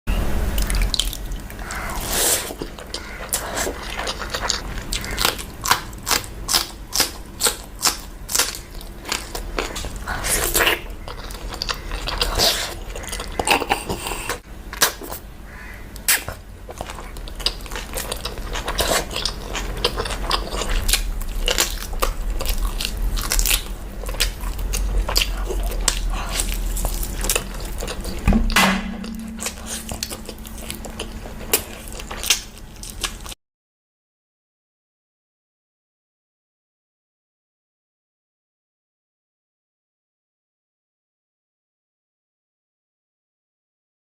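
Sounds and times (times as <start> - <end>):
steady low hum: 0.1 - 33.4
person chewing and biting food: 0.5 - 15.2, 16.0 - 28.2, 29.0 - 33.3.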